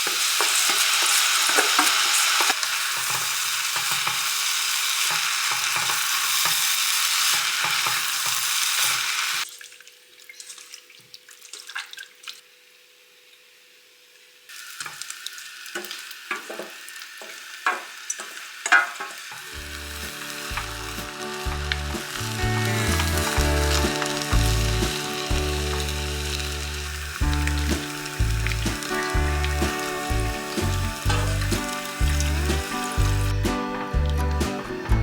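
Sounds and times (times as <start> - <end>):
food sizzling in a pan: 0.0 - 10.4, 12.4 - 35.0
music: 19.4 - 35.0.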